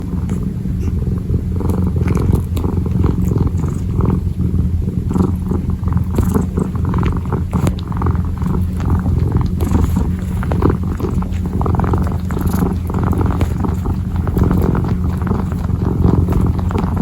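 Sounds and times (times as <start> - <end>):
kitten purring: 0.0 - 17.0.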